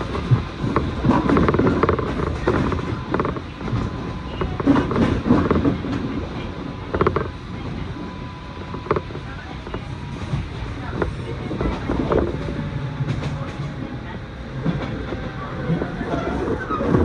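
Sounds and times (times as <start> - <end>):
wheels knocking and creaking: 0.0 - 6.2, 8.6 - 17.0
train rumbling: 0.0 - 17.0
thin steady whine: 10.8 - 17.0.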